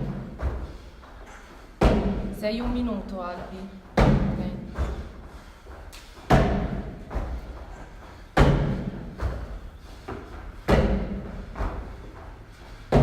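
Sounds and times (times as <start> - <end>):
barbell thudding on floor: 4.0 - 5.1, 6.3 - 7.4, 8.4 - 9.5, 10.6 - 11.9.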